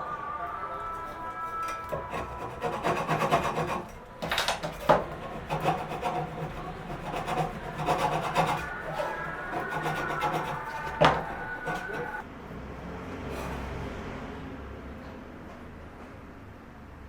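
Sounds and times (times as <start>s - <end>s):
rasping on wood: 1.8s - 12.2s.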